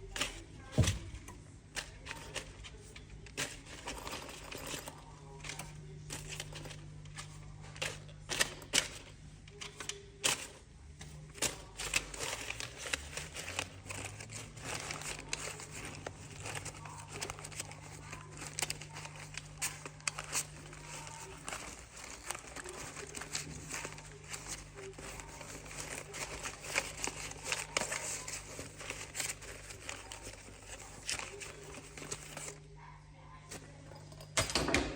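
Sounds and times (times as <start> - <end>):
banknotes rustling and crinkling: 0.0 - 32.6.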